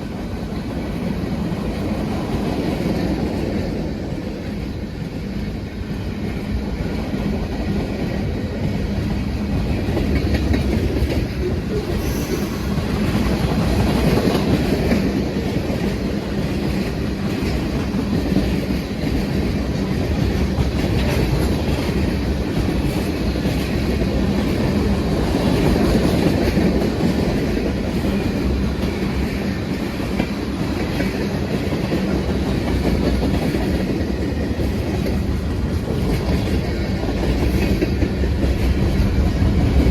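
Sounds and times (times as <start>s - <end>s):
freight train wheels rumbling on rail: 0.0s - 39.9s.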